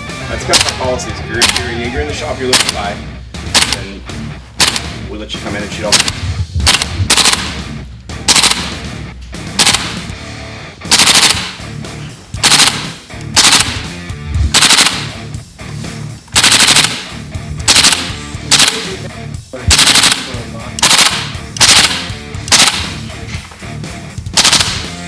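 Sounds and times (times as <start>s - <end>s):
airsoft rifle full-auto bursts: 0.5s - 2.9s, 3.5s - 3.9s, 4.6s - 4.9s, 5.9s - 7.6s, 8.3s - 8.8s, 9.6s - 10.1s, 10.9s - 11.6s, 12.4s - 15.2s, 16.4s - 19.0s, 19.7s - 23.0s, 24.4s - 25.0s.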